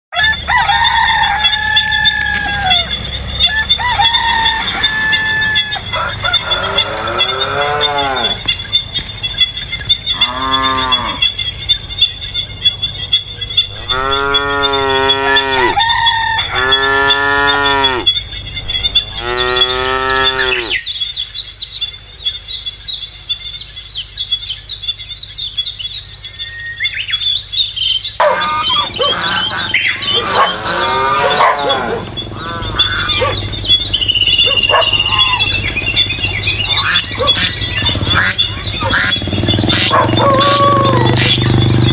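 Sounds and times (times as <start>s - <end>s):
birds chirping rapidly: 0.1s - 41.9s
high-pitched insect drone: 0.2s - 21.0s
cattle mooing: 4.5s - 8.5s, 10.1s - 11.3s, 13.7s - 18.2s, 19.1s - 20.8s, 28.2s - 41.9s.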